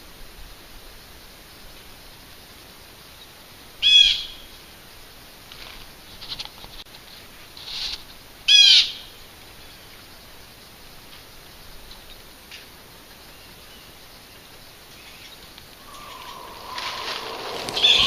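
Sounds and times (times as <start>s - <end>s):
shrill animal call: 15.8s - 18.0s.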